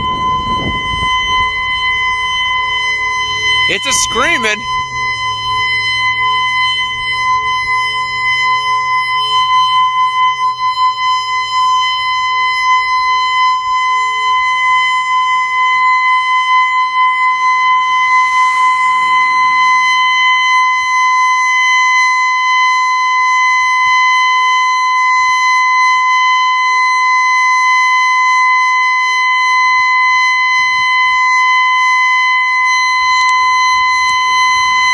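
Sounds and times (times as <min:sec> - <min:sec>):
tornado warning siren: 0:00.0 - 0:34.9.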